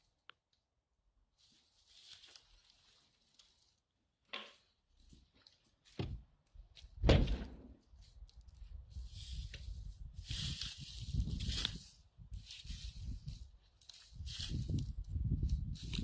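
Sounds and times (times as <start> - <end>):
sudden thuds: 6.0 - 6.2, 7.0 - 7.8.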